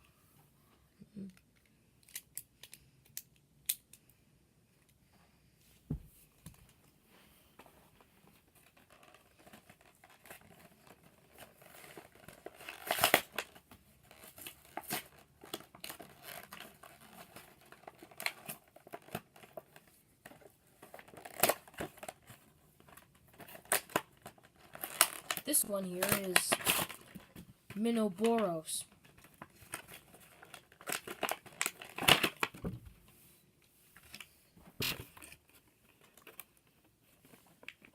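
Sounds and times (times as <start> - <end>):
plastic packaging crinkling: 8.6 - 32.6.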